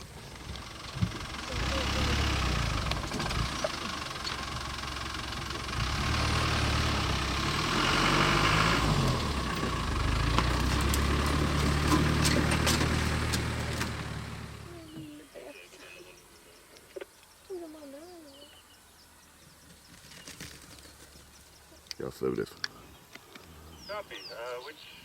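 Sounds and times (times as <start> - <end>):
vehicle engine running low: 0.0 - 16.2.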